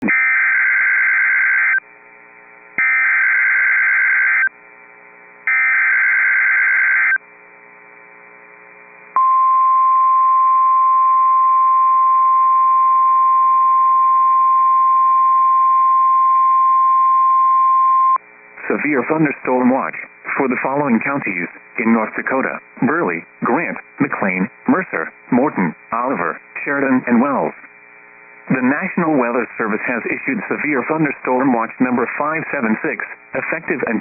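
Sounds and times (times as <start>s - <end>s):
steady warning alarm tone: 0.0s - 1.8s, 2.8s - 4.5s, 5.5s - 7.2s.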